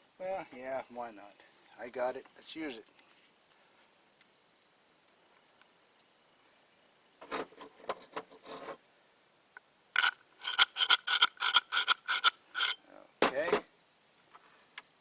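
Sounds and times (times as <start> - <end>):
ramrod scraping in barrel: 7.2 - 8.8, 10.0 - 12.8.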